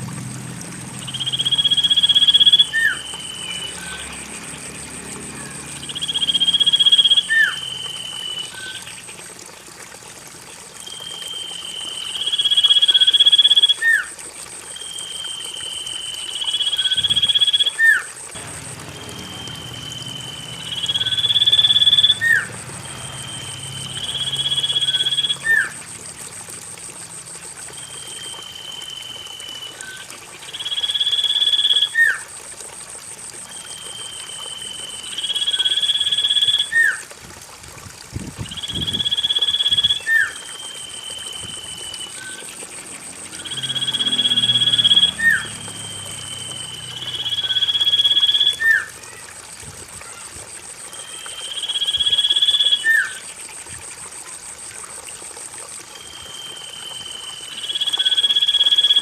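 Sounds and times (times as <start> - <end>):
bird whistling song: 1.0 - 4.2, 5.8 - 8.9, 19.0 - 22.5, 23.1 - 25.7, 38.5 - 42.4, 43.4 - 48.9.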